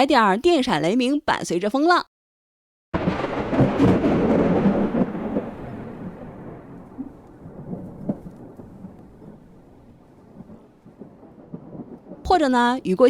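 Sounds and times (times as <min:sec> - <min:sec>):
rain: 0:03.0 - 0:13.0
thunder rumble: 0:03.0 - 0:13.0
faint crackles: 0:04.6 - 0:12.4.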